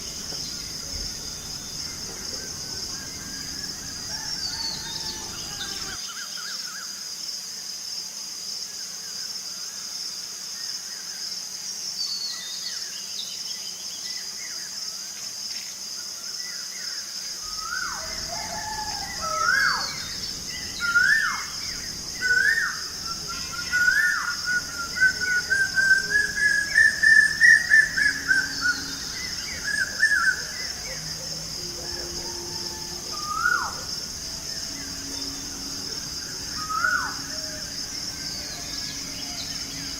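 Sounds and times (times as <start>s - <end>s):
birds calling: 0.0s - 6.0s, 17.4s - 39.9s
insect drone: 0.0s - 39.9s
bird whistling loud notes: 17.4s - 39.9s.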